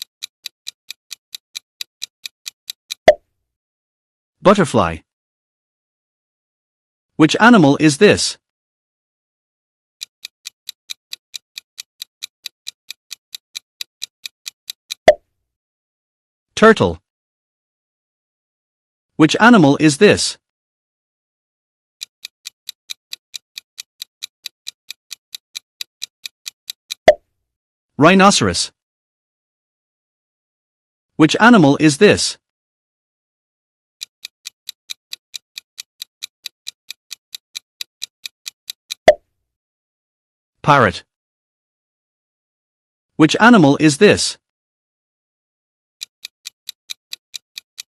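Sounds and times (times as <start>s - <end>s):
timer ticking: 0.0s - 3.2s, 10.0s - 15.2s, 22.0s - 27.2s, 34.0s - 39.2s, 46.0s - 47.9s.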